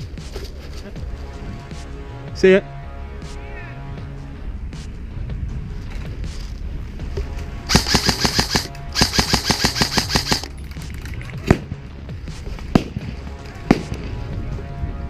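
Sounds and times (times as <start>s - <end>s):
airsoft rifle automatic fire: 7.7s - 10.5s.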